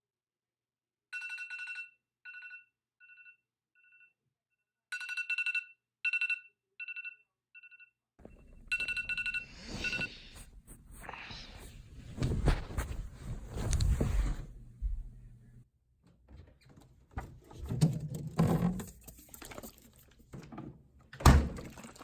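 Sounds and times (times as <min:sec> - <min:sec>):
electronic telephone ringing: 0:01.2 - 0:03.4, 0:04.9 - 0:10.3
rustling background noise: 0:08.2 - 0:15.6.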